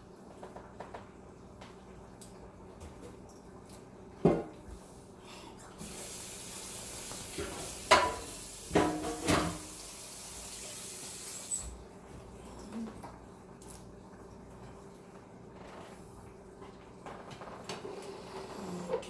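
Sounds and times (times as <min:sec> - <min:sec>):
kitchen tap running: 0:05.6 - 0:11.8
pots or dishes clanking: 0:07.4 - 0:09.7.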